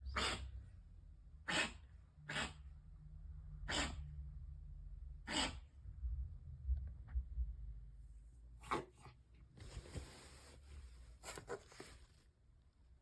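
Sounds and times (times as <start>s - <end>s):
pet coughing: 0.0s - 0.6s, 1.4s - 2.6s, 3.7s - 4.0s, 5.2s - 5.7s.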